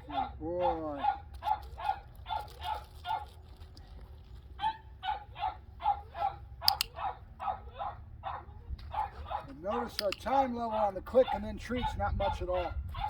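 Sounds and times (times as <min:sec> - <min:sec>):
puppy barking: 0:00.0 - 0:03.4, 0:04.6 - 0:13.0
sharp click: 0:06.6 - 0:07.0, 0:10.0 - 0:10.3.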